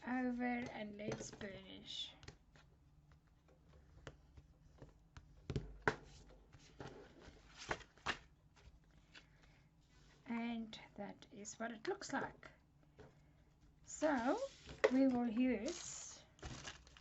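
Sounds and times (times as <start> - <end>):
paper rustling and rubbing: 14.0 - 14.9.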